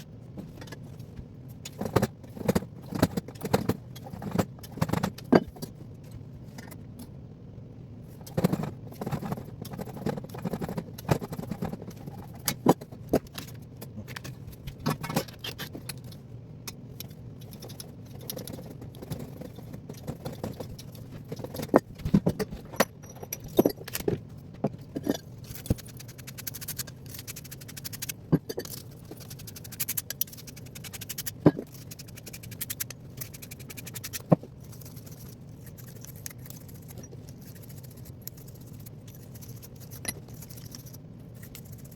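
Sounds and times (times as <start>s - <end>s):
low steady hum: 0.0s - 41.9s
metal tools clinking and scraping: 20.0s - 24.2s.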